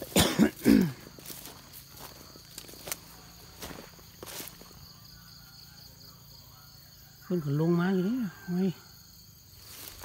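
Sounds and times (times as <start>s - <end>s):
footsteps in dry vegetation: 0.0s - 5.2s, 9.4s - 10.0s
faint insect drone: 0.0s - 10.0s.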